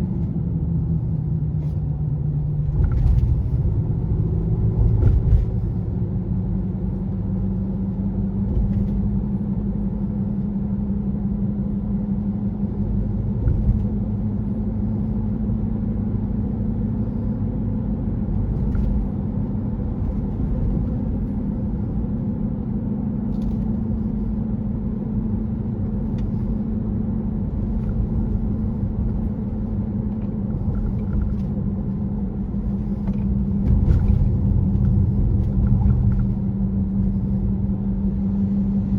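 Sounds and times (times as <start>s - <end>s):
low road rumble: 0.0s - 38.9s
loud steady hum: 8.5s - 38.9s.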